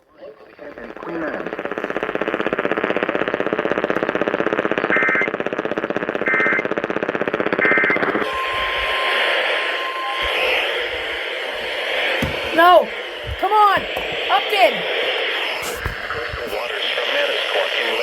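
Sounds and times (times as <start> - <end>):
radio hiss: 0.0 - 3.2, 7.9 - 18.0
harsh rapid buzzing static: 1.1 - 18.0
short data bursts: 7.5 - 16.6
faint steady tone: 8.2 - 13.1.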